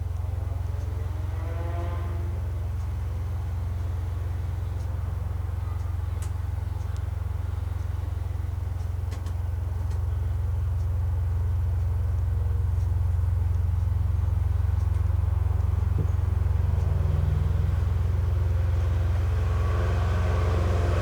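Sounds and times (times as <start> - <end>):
steady low synthesized drone: 9.6 - 21.0.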